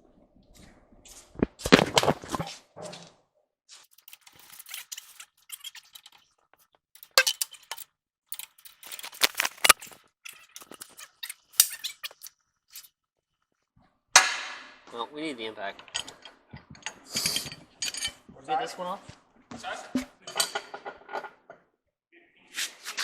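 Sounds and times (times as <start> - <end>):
metal hand tools clinking: 7.0 - 9.8, 15.8 - 18.3.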